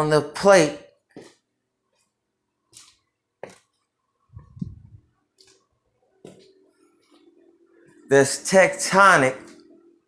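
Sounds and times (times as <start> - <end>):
faint clicks and taps: 5.3 - 8.0.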